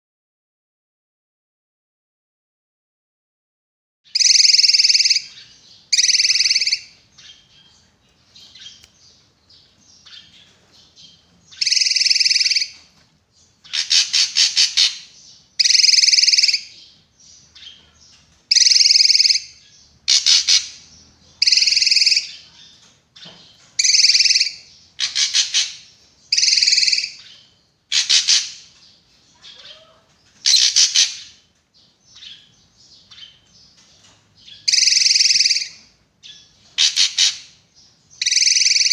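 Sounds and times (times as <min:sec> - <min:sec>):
bird calling sharply: 0:36.8 - 0:37.5.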